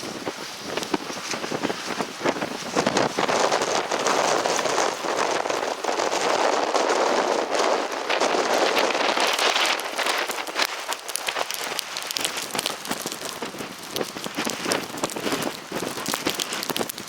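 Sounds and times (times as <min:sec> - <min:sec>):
blizzard wind with blowing snow: 0:00.0 - 0:17.0.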